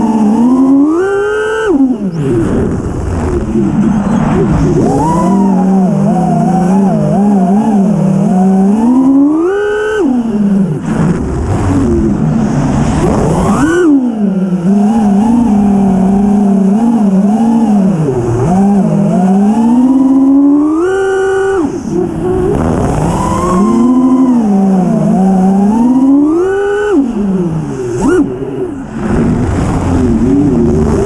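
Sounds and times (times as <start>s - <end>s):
drone motors whining: 0.0s - 31.0s
rush of air: 10.8s - 13.8s.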